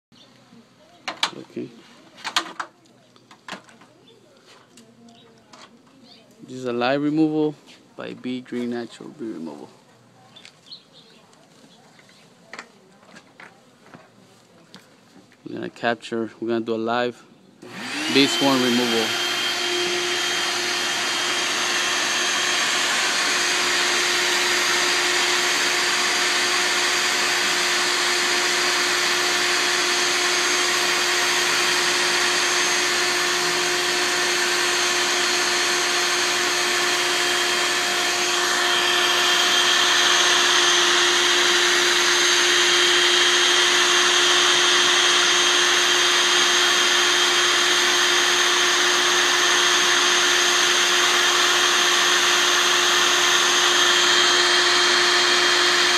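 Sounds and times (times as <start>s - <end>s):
vacuum motor whirring: 17.6s - 55.9s.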